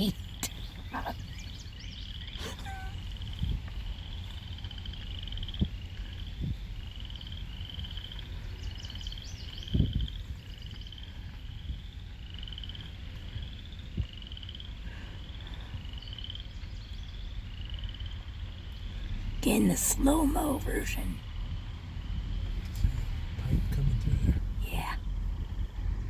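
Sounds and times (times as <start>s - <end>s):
frogs calling: 0.0s - 20.0s.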